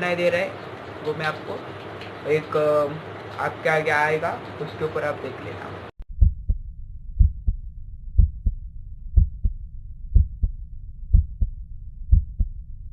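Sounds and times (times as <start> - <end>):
heartbeat through stethoscope: 6.1 - 6.6, 7.2 - 12.6.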